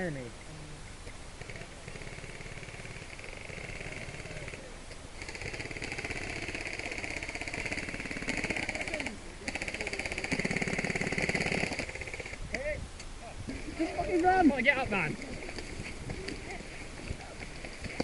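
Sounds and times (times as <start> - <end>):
airsoft guns firing full-auto: 1.4 - 4.6, 5.2 - 12.4, 17.4 - 18.0.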